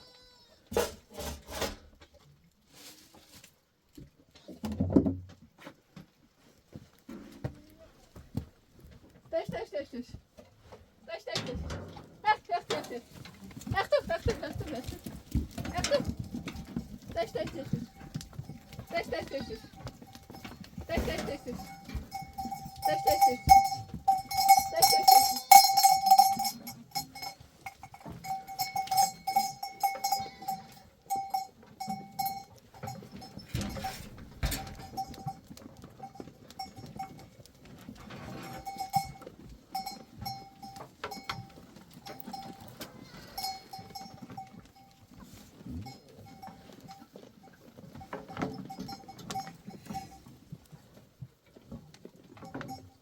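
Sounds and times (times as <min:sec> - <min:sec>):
metal livestock bell clanking: 0:12.6 - 0:50.5, 0:52.2 - 0:53.0.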